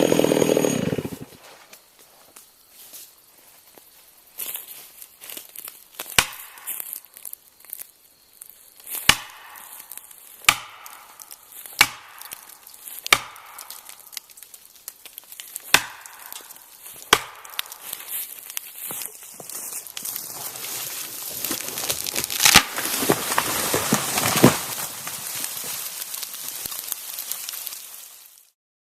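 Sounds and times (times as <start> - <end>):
heavy blows chopping wood: 6.2 - 6.5, 9.1 - 9.4, 10.5 - 11.0, 11.8 - 12.3, 13.1 - 13.8, 15.7 - 16.3, 17.0 - 17.6, 22.4 - 24.8
rustling: 17.7 - 28.3.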